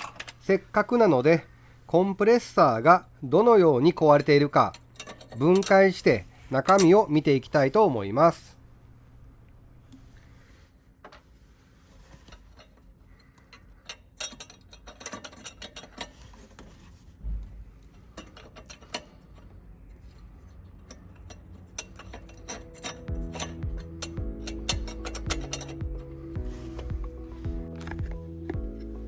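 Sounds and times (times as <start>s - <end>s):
metal tools clicking and clinking: 0.0s - 0.5s, 4.0s - 7.1s, 13.4s - 16.6s, 18.1s - 19.5s, 20.7s - 26.9s.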